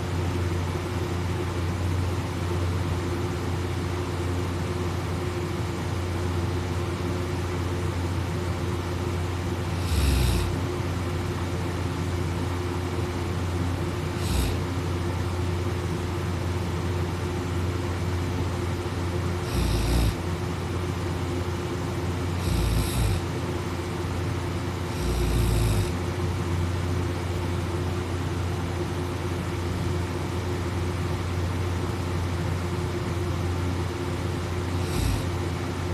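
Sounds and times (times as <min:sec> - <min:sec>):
low background hum: 0:00.0 - 0:35.9
person snoring: 0:09.6 - 0:10.7, 0:14.1 - 0:14.8, 0:19.4 - 0:20.3, 0:22.3 - 0:23.3, 0:24.8 - 0:26.0, 0:34.7 - 0:35.4.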